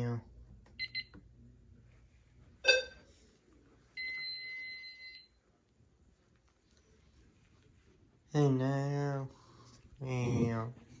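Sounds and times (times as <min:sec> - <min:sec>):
steady electronic beep: 0:02.6 - 0:03.0.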